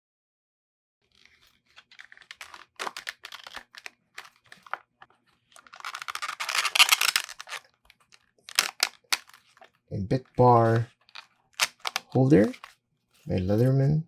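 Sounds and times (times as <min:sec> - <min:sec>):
tools rustling and scraping: 0:01.1 - 0:09.8.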